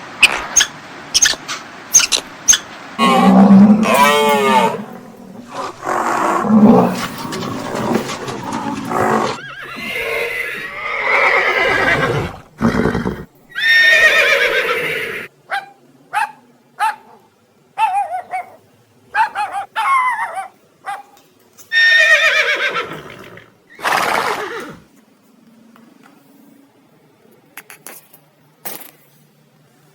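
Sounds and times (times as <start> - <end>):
horses whinnying: 3.0 - 15.3, 21.7 - 24.9.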